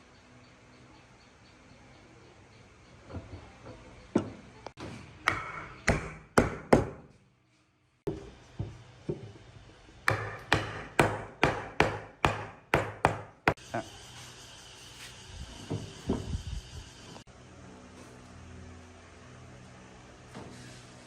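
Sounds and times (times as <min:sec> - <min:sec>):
tool knocking on wood: 0:08.1 - 0:09.4, 0:10.1 - 0:13.6.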